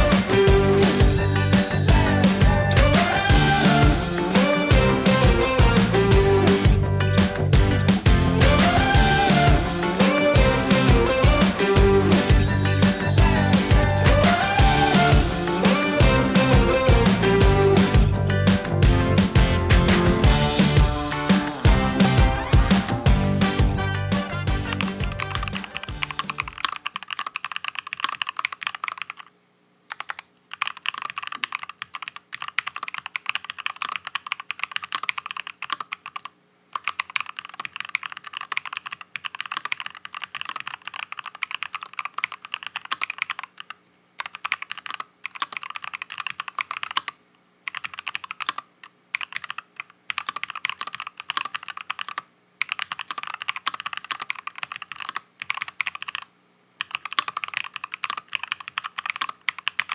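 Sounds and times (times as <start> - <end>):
typing on mechanical keyboard: 24.7 - 29.3, 29.9 - 59.9.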